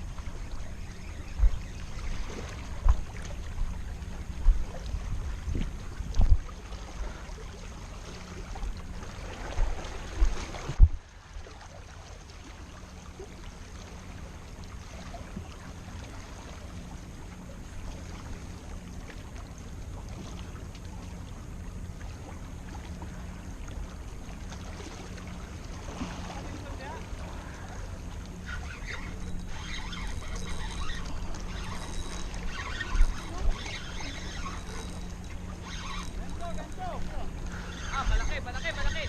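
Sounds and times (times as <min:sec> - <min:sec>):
faint constant hum: 0:00.0 - 0:39.0.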